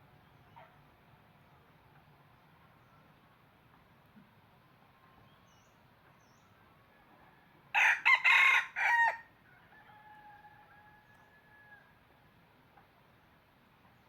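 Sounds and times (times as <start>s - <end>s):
rooster crowing: 7.7s - 12.0s.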